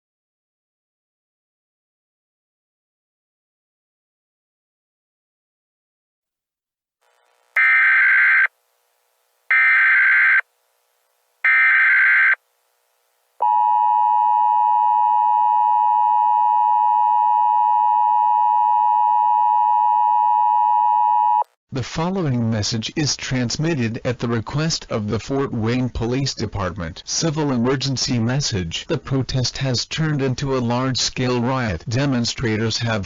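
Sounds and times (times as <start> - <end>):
digital data tones: 7.6 - 8.5
two-tone attention signal: 7.6 - 8.5.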